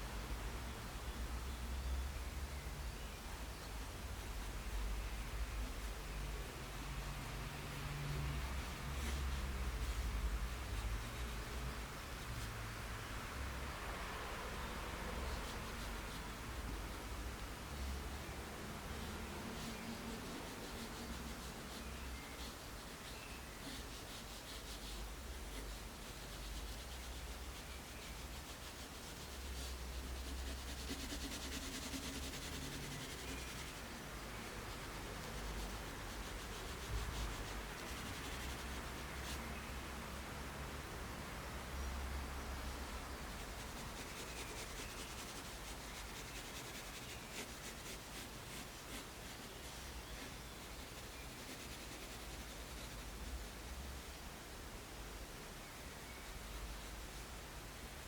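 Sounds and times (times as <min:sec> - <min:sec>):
pencil scratching on paper: 0:28.0 - 0:34.0, 0:43.3 - 0:53.3.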